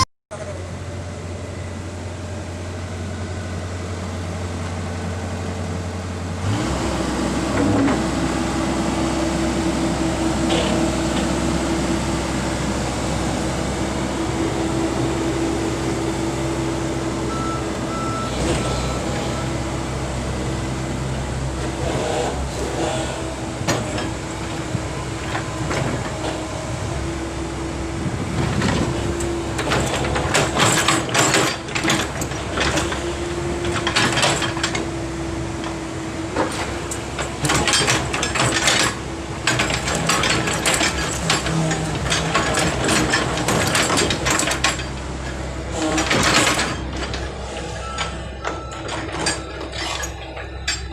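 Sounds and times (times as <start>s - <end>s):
backhoe engine hum: 0.0s - 50.9s
metal clanks and knocks: 28.4s - 34.9s, 36.4s - 50.9s.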